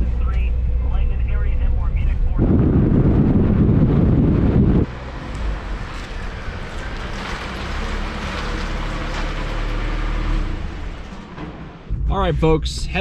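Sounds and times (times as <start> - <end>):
loud low rumble: 0.0 - 4.9, 11.8 - 13.0
road and wind noise: 0.0 - 13.0
truck engine hum: 0.0 - 13.0.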